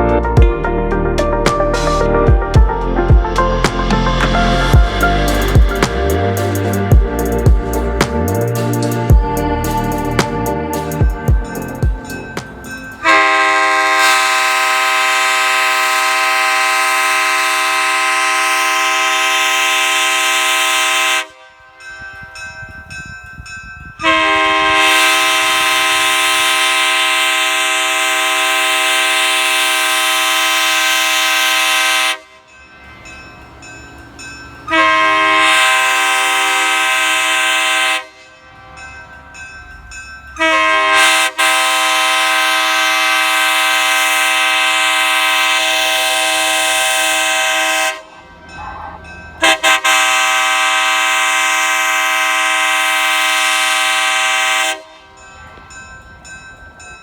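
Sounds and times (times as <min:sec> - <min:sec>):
locomotive air horn blasts: 0:11.4 - 0:21.8, 0:24.0 - 0:32.5, 0:34.7 - 0:38.8, 0:40.4 - 0:55.2.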